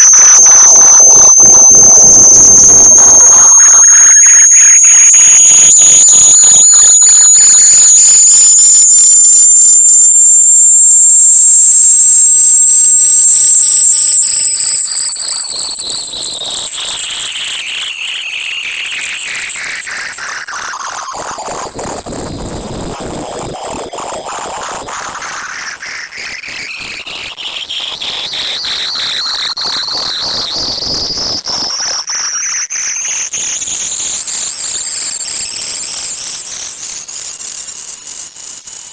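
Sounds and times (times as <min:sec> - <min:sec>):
rising electronic tone: 0:00.0 - 0:08.2
faint sweeping electronic tone: 0:00.0 - 0:12.2.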